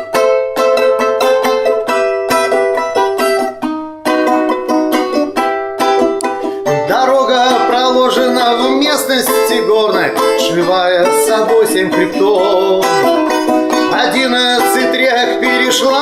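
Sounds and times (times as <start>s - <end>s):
balalaika fast strumming: 0.0s - 16.0s
person singing: 6.2s - 16.0s.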